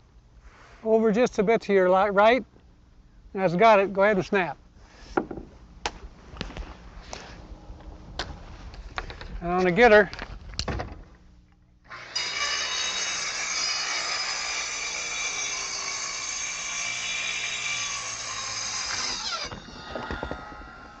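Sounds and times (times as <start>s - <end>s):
circular saw cutting plywood: 11.9s - 21.0s.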